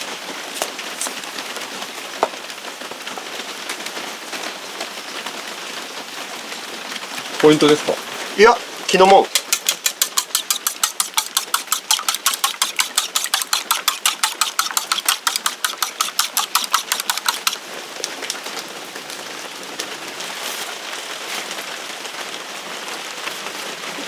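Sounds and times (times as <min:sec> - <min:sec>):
eggs being beaten in a bowl: 0:08.9 - 0:18.4.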